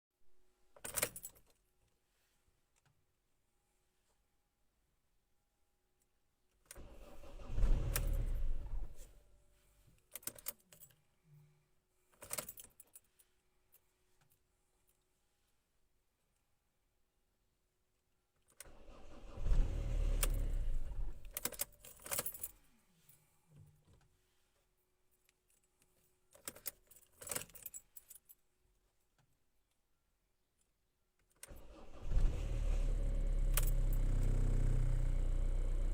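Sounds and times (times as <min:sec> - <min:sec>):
diesel engine cranking and running: 0:06.8 - 0:08.9, 0:18.8 - 0:21.4, 0:31.5 - 0:35.9.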